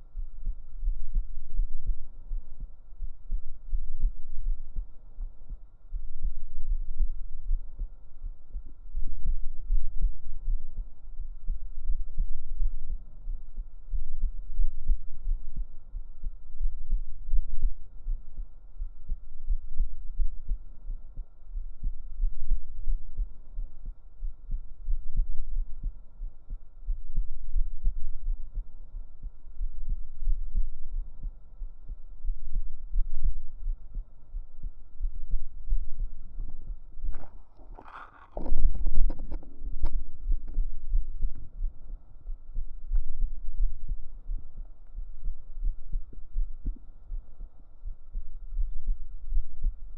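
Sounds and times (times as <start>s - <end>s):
faint high hum: 0.0s - 49.9s
heartbeat thudding: 0.0s - 49.9s.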